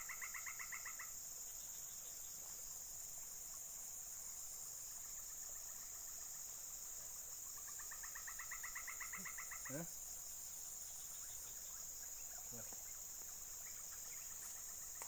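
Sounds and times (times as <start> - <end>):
insects chirping chorus: 0.0 - 15.0.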